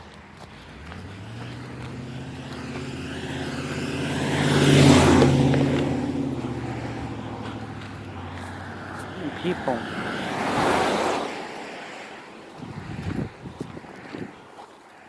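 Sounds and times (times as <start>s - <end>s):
vehicle passing by: 0.0s - 14.4s.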